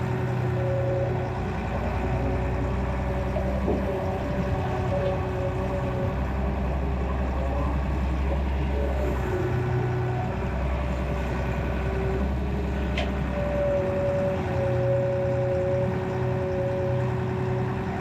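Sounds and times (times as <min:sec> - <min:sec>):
excavator diesel engine: 0:00.0 - 0:18.0.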